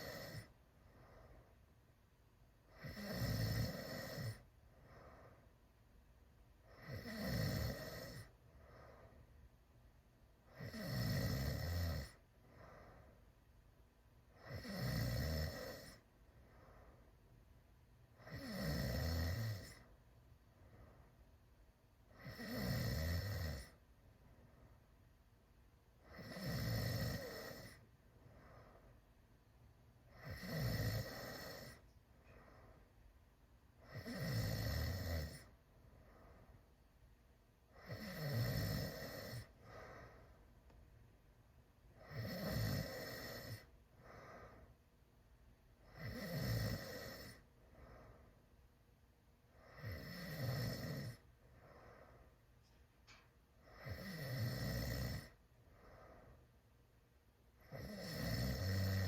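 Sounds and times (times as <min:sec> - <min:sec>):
person snoring loudly: 0:02.8 - 0:04.4, 0:06.7 - 0:08.3, 0:10.5 - 0:12.2, 0:14.4 - 0:16.0, 0:18.2 - 0:19.8, 0:22.2 - 0:23.8, 0:26.1 - 0:27.8, 0:30.2 - 0:31.8, 0:33.8 - 0:35.5, 0:37.8 - 0:39.5, 0:42.0 - 0:43.7, 0:46.0 - 0:47.4, 0:49.7 - 0:51.2, 0:53.7 - 0:55.4, 0:57.7 - 0:59.0.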